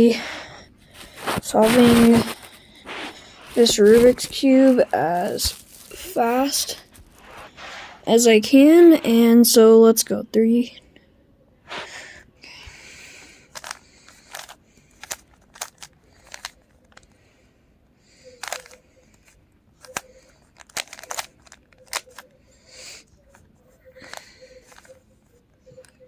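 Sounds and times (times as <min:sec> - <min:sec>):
puzzle cube clicking: 0:13.5 - 0:16.6, 0:18.4 - 0:18.8, 0:19.8 - 0:22.2.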